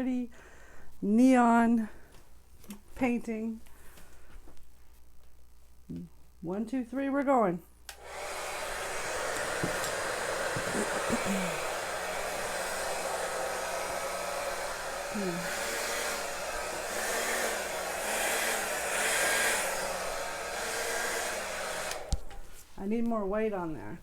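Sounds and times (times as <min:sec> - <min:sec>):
hair dryer running: 0:07.9 - 0:22.6.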